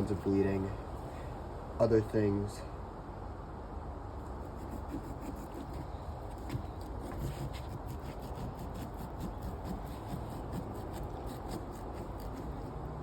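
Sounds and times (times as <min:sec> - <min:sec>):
knife cutting pumpkin rind: 0:04.3 - 0:12.9.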